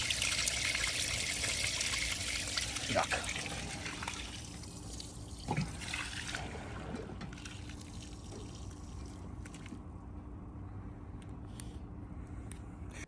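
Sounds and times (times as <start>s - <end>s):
water trickling and dripping: 0.0s - 9.8s.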